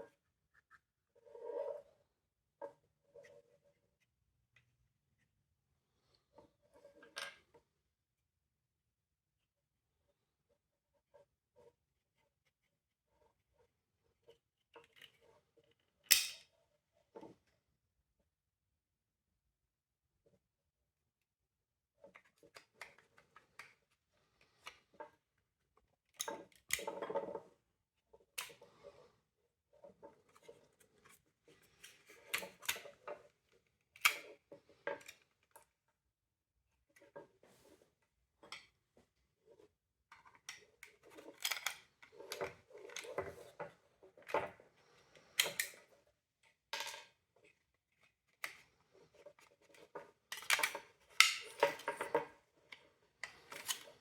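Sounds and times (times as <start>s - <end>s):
plastic parts clicking and scraping: 29.8s - 35.7s, 39.5s - 54.0s.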